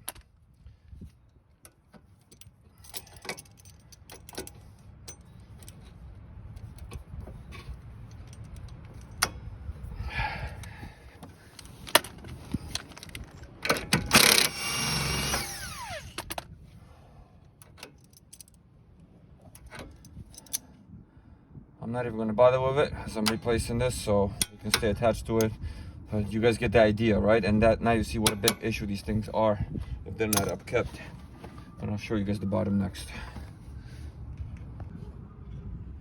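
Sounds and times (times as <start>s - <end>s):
metal clinks and ratcheting: 2.2s - 5.9s.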